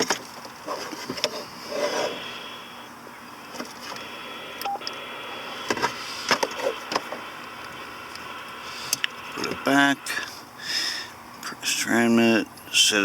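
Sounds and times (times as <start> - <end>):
radio control clicks: 3.6 - 9.7
steady high tones: 7.2 - 12.4.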